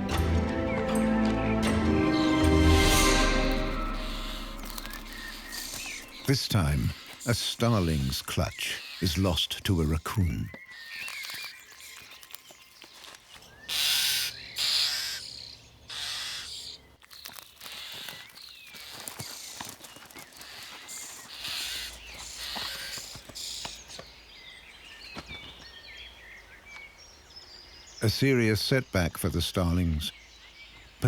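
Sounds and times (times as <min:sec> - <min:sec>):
starlings harsh rasping calls: 0:02.1 - 0:12.2, 0:13.4 - 0:16.9, 0:17.6 - 0:24.0.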